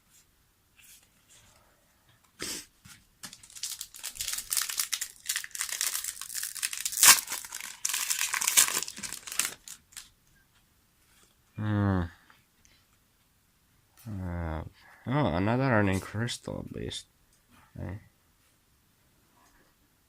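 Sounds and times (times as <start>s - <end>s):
foil wrapper crinkling and tearing: 3.2s - 10.1s.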